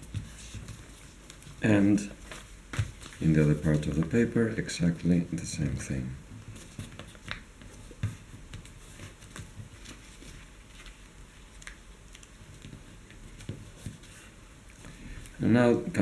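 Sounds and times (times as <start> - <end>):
paper crinkles and taps: 2.2 - 4.3, 6.5 - 14.2.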